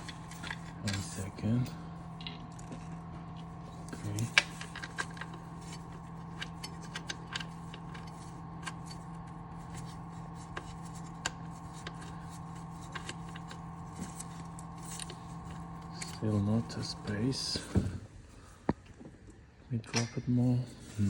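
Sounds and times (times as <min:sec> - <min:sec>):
steady background hum: 0:00.0 - 0:21.0
tools clicking and rubbing: 0:03.8 - 0:15.2.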